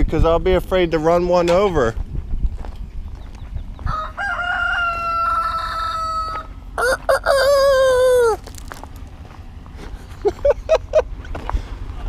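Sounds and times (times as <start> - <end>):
rooster crowing: 3.8 - 8.4.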